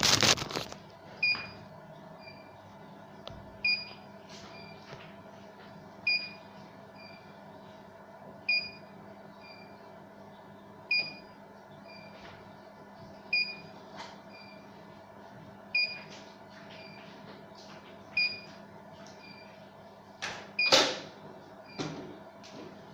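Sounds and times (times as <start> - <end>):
electrical hum: 0.0 - 22.9
machine control unit beeping: 20.6 - 20.8.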